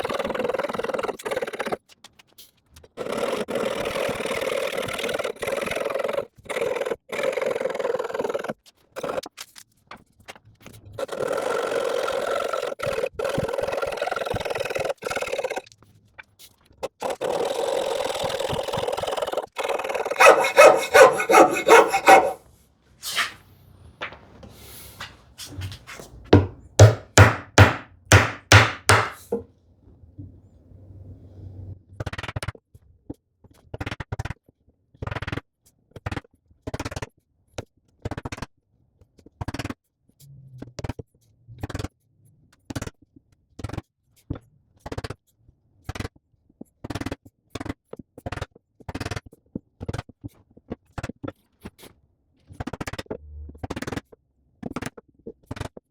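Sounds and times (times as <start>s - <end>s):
saw strokes on wood: 19.5s - 22.4s, 23.0s - 23.4s
wood rubbing and scraping: 19.6s - 22.4s, 23.0s - 23.4s, 25.0s - 29.4s.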